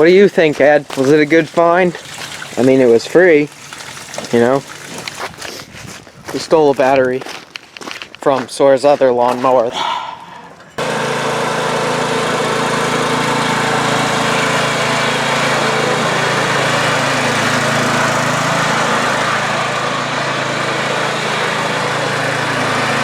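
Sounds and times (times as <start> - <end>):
lawn mower engine running: 10.8 - 23.0.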